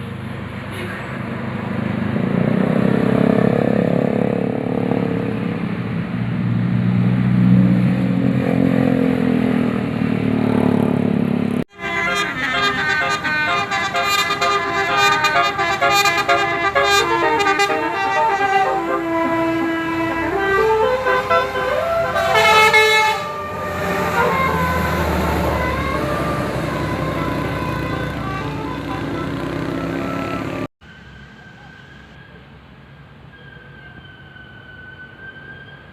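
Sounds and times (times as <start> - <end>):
bus engine drone: 0.0 - 35.9
multi-tone air horn melody: 11.7 - 30.7.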